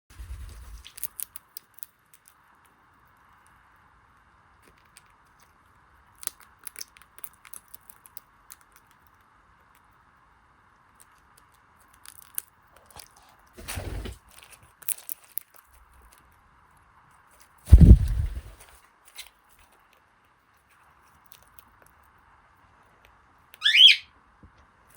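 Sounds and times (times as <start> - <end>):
bird clicks and crunches: 0.4 - 2.6, 4.6 - 9.9, 11.0 - 13.3, 14.3 - 16.3, 20.7 - 22.1.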